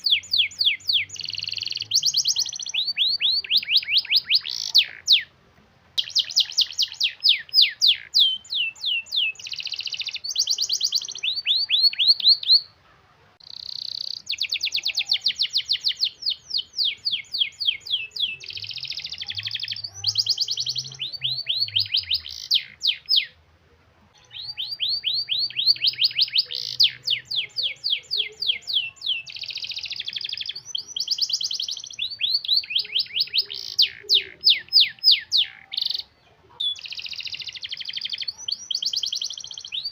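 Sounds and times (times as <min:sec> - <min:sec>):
canary singing trills: 0:00.0 - 0:05.4, 0:06.0 - 0:12.8, 0:13.4 - 0:23.4, 0:24.1 - 0:39.9.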